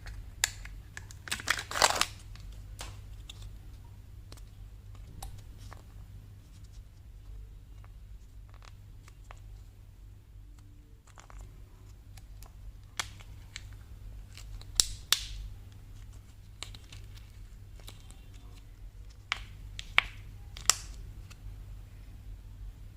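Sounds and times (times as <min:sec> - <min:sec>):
candy wrapper crackling: 0:00.0 - 0:03.6, 0:07.2 - 0:09.7, 0:10.6 - 0:21.4.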